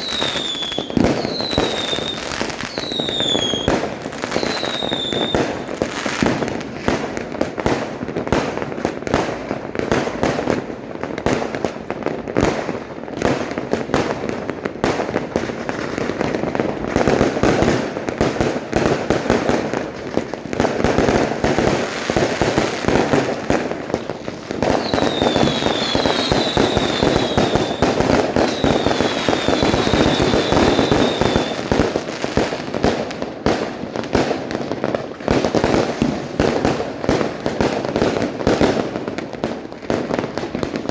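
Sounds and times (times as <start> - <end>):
fireworks high whistles: 0.0 - 7.3, 21.6 - 33.0
fireworks and firecrackers banging: 0.0 - 40.9.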